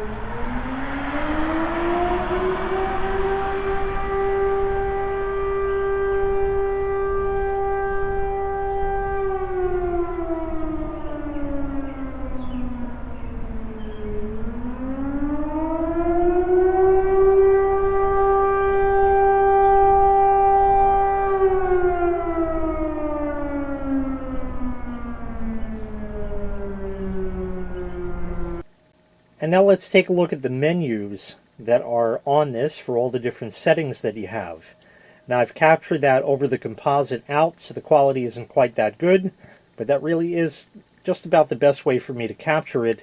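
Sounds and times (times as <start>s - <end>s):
fire siren wailing: 0.0s - 28.9s.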